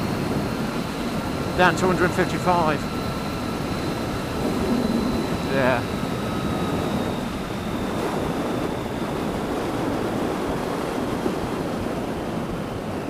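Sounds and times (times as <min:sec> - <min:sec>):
motorcycle running: 0:00.0 - 0:10.4
wind rush over microphone: 0:00.0 - 0:13.0.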